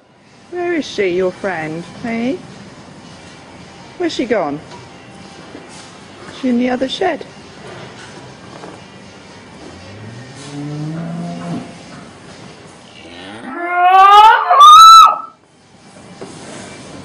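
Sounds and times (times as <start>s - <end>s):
cow mooing: 9.8s - 11.9s, 12.9s - 15.3s.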